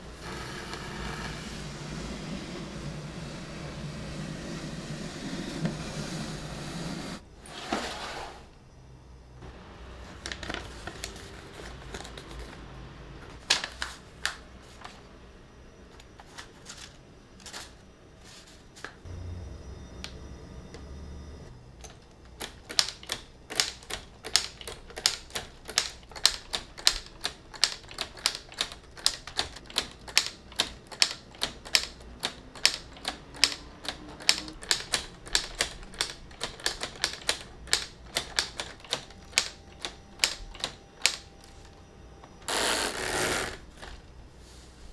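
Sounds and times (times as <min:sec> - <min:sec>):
plastic typewriter keys clicking: 0:21.8 - 0:41.7.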